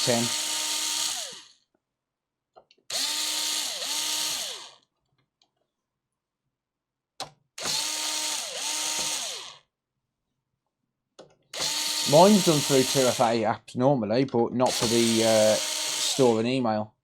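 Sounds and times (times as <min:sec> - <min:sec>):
handheld power tool whirring: 0:00.0 - 0:01.6, 0:02.9 - 0:04.9, 0:07.6 - 0:09.7, 0:11.5 - 0:13.4, 0:14.7 - 0:16.4.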